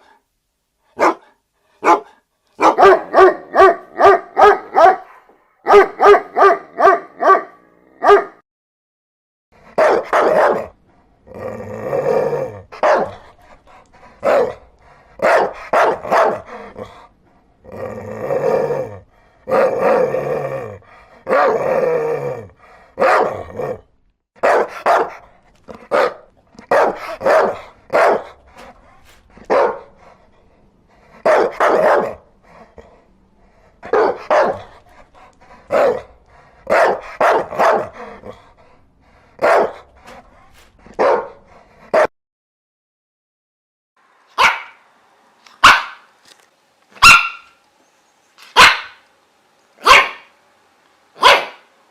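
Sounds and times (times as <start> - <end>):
dog barking: 0.9 - 8.4, 9.7 - 10.8, 12.7 - 13.3, 14.2 - 14.6, 15.2 - 16.6, 21.3 - 21.6, 23.0 - 23.5, 24.4 - 28.4, 29.4 - 30.0, 31.2 - 32.2, 33.8 - 34.8, 35.7 - 38.2, 39.4 - 39.9, 40.9 - 42.1, 44.4 - 44.8, 45.6 - 46.1, 47.0 - 47.6, 48.5 - 49.0, 49.8 - 50.3, 51.2 - 51.7.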